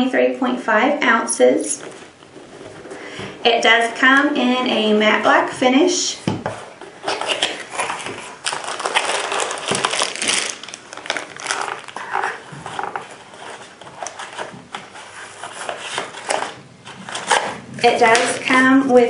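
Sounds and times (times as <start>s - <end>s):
packaging crinkling and rustling: 6.8s - 18.6s.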